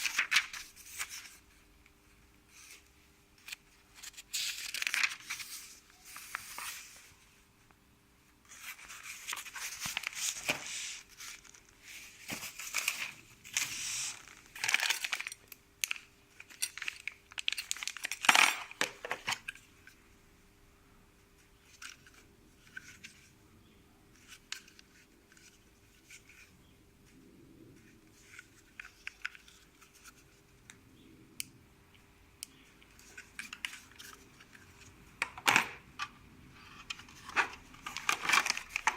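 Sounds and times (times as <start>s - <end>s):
packaging crinkling and tearing: 4.0s - 5.5s, 12.4s - 19.5s, 37.8s - 38.9s.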